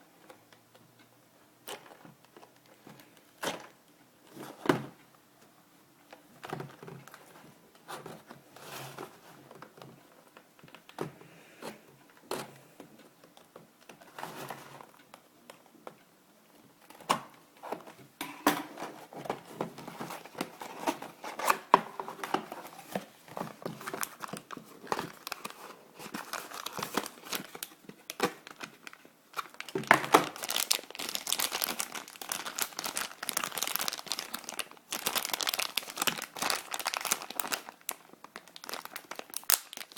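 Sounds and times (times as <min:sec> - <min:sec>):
packaging crinkling and tearing: 0:19.8 - 0:39.9.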